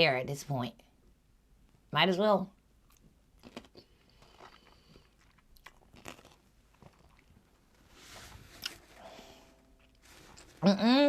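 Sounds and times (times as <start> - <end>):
chewing and biting fruit: 2.9 - 7.4
soft hiss: 7.3 - 10.8.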